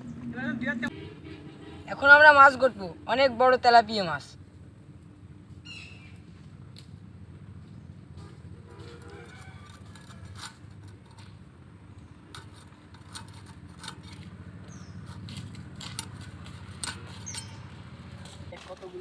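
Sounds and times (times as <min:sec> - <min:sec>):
knife scraping and knocking: 0:08.7 - 0:18.5.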